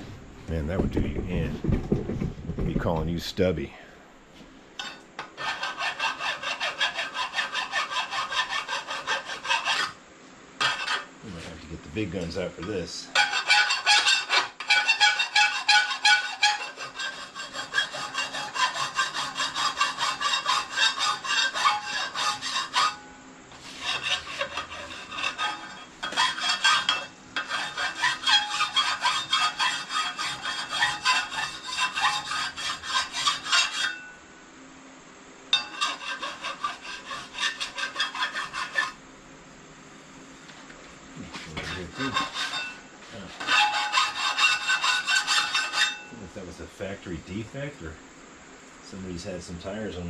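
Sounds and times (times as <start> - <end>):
hand file rasping on steel: 4.8 - 10.0, 10.6 - 11.4, 13.1 - 34.1, 35.6 - 39.0, 41.4 - 46.1.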